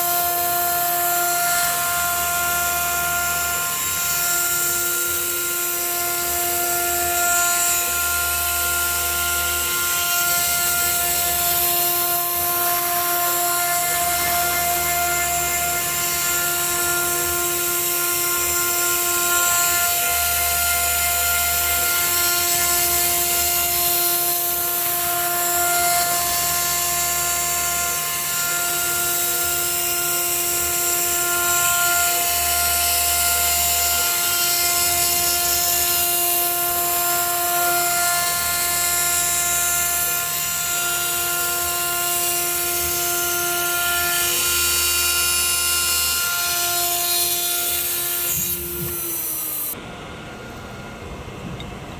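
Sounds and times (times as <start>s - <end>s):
router spindle whining: 0.0s - 51.9s
low machine hum: 49.8s - 51.9s.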